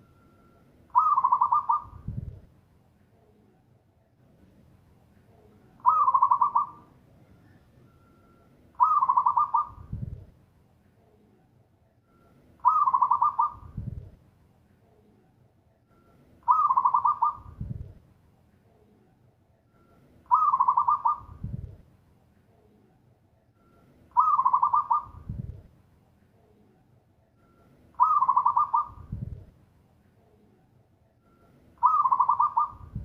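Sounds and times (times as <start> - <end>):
dove cooing song: 0.9 - 2.4, 5.4 - 7.7, 8.8 - 10.2, 12.6 - 14.1, 16.4 - 17.9, 20.3 - 21.7, 24.1 - 25.6, 28.0 - 29.5, 31.8 - 33.0.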